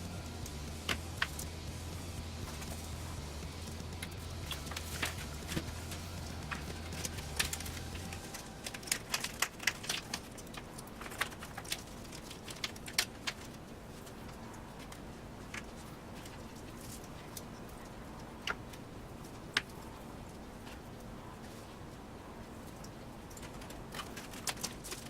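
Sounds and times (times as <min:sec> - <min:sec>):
low hum: 0:00.0 - 0:12.6
small hard parts clicking: 0:00.0 - 0:20.0, 0:22.7 - 0:25.0.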